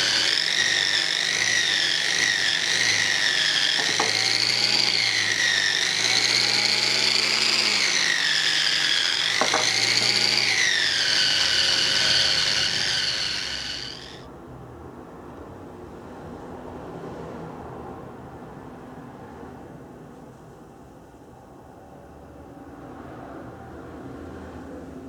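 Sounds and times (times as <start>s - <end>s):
electric power tool whining: 0.0s - 14.2s.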